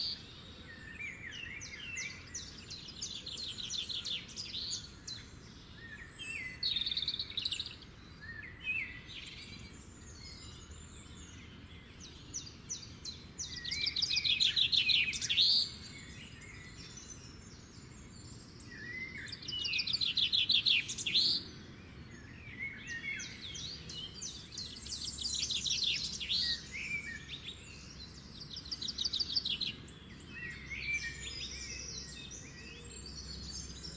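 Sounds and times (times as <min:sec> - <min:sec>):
faint background hiss: 0:00.0 - 0:33.9
songbirds trilling and chirping: 0:00.0 - 0:33.9.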